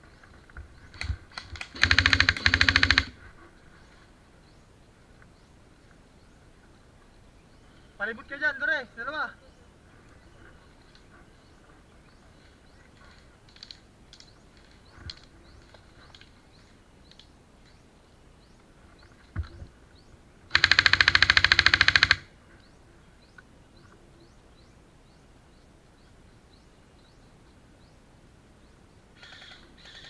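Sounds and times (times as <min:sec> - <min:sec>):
airsoft gun full-auto burst: 0:01.0 - 0:03.2, 0:20.5 - 0:22.3.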